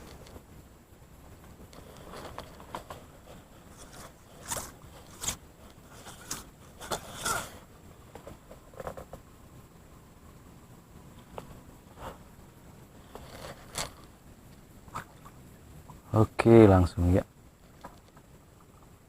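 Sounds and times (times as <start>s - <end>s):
handling scrapes and rustles: 1.7s - 9.2s, 13.0s - 14.2s.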